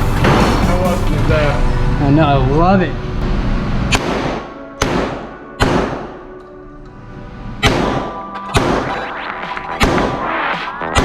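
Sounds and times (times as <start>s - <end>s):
background music: 0.0s - 11.0s
gunshots with echo: 3.9s - 6.3s, 7.6s - 11.0s.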